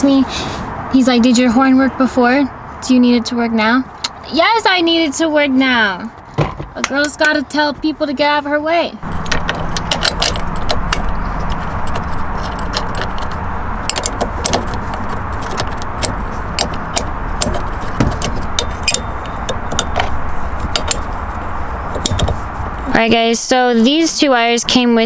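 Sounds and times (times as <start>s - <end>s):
steady low rumble: 0.0s - 25.0s
metal tools clinking and rattling: 9.0s - 23.0s.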